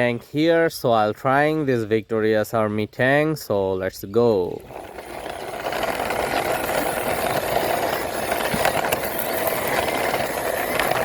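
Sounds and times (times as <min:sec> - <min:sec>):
toy tank wheels rolling and rattling: 0:03.9 - 0:11.0.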